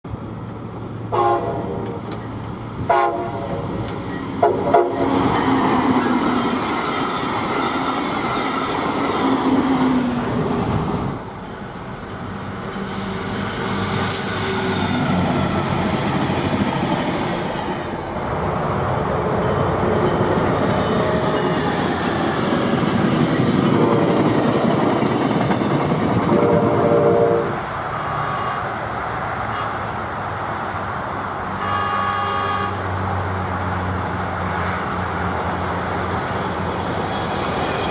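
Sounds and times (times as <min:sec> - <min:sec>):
trains passing at speed: 0:00.1 - 0:37.9
locomotive air horn: 0:01.1 - 0:02.0, 0:02.9 - 0:03.6, 0:04.4 - 0:05.3, 0:26.3 - 0:28.8, 0:31.6 - 0:32.8.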